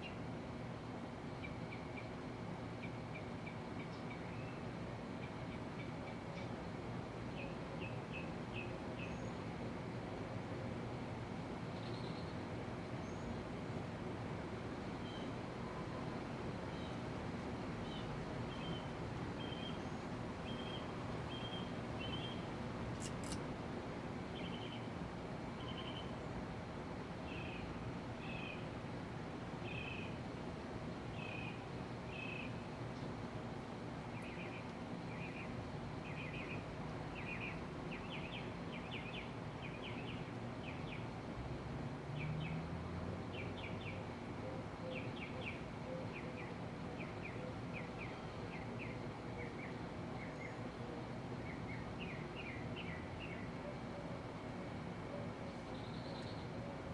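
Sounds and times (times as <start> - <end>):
bird chirps: 55.7 - 56.5.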